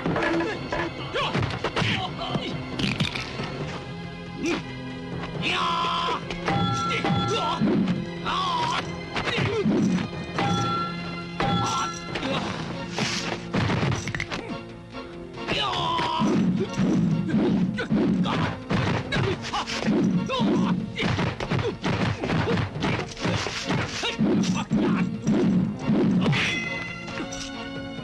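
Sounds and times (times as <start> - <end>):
film score music: 0.0 - 28.0
punch and kick impacts: 13.0 - 14.1, 16.3 - 26.5.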